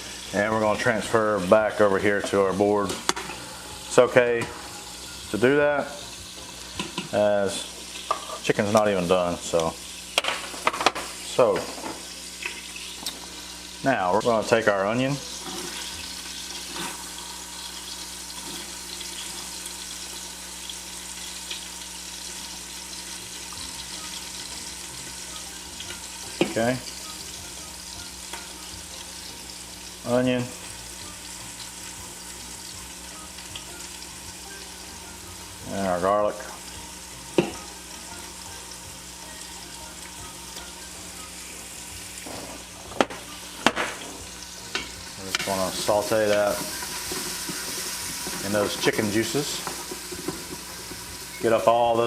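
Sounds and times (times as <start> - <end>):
oil sizzling in a pot: 0.0 - 52.0.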